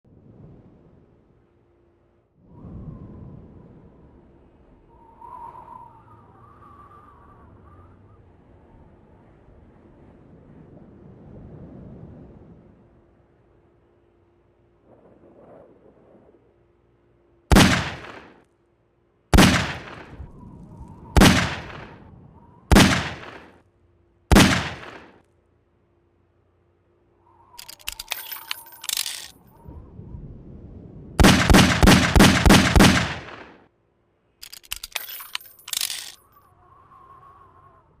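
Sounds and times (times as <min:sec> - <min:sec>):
revolver gunshots: 0:17.5 - 0:18.4, 0:19.3 - 0:20.2, 0:21.2 - 0:22.1, 0:22.7 - 0:23.6, 0:24.3 - 0:25.2, 0:31.2 - 0:33.7
metallic clicking and clatter: 0:27.6 - 0:29.5, 0:34.4 - 0:36.3.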